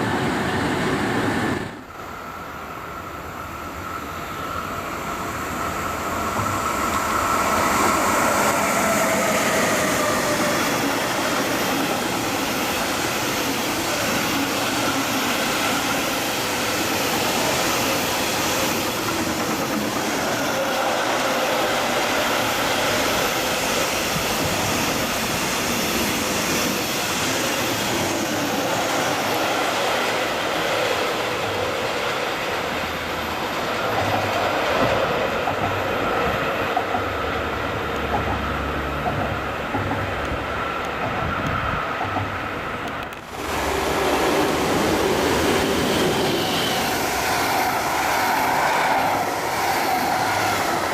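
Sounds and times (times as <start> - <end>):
train wheels rolling on rails: 0.0 - 50.9.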